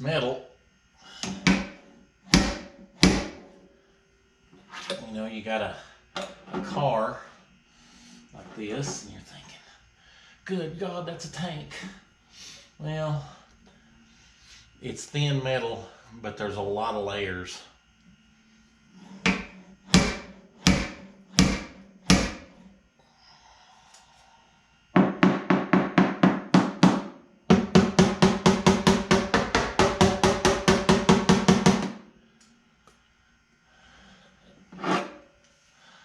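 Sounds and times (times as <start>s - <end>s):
hammer striking sheet metal: 1.2s - 3.6s, 19.2s - 22.5s, 25.0s - 32.0s.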